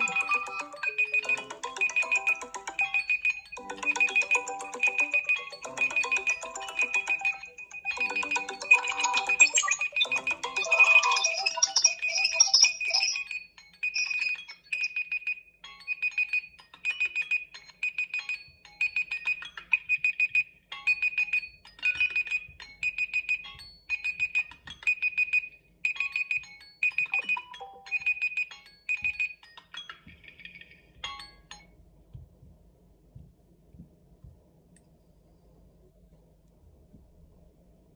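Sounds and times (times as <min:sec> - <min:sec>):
high electronic beeping: 0:00.0 - 0:13.3
phone ringtone melody: 0:00.0 - 0:31.7.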